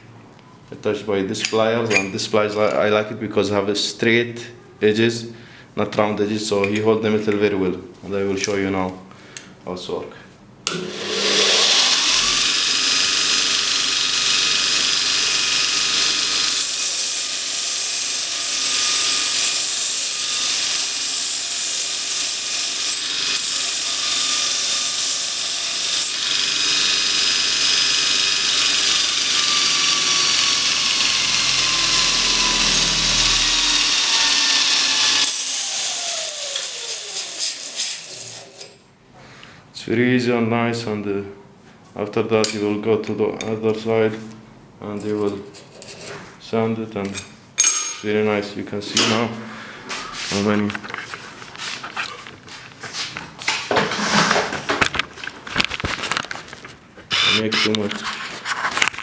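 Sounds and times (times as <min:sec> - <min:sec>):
motor winding down: 0:10.7 - 0:38.4
belt sander motor running: 0:10.7 - 0:38.5
metal hissing on abrasive belt: 0:10.9 - 0:38.6.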